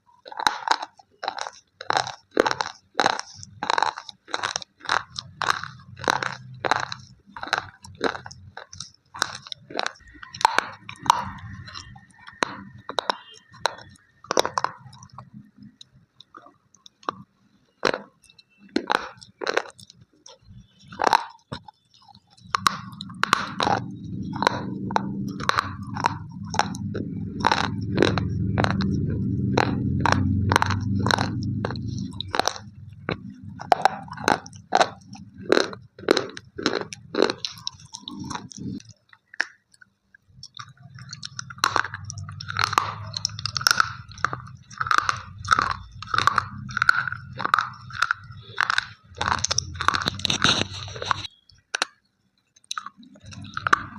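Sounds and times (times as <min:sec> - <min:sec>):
pencils being chewed crunching: 0:00.0 - 0:53.9
low rumble: 0:22.6 - 0:35.6, 0:41.5 - 0:51.3.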